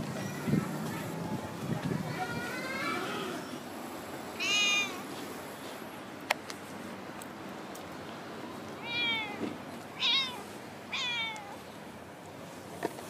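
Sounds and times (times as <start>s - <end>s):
cat meowing: 4.4s - 5.0s, 8.8s - 9.4s, 10.0s - 11.6s.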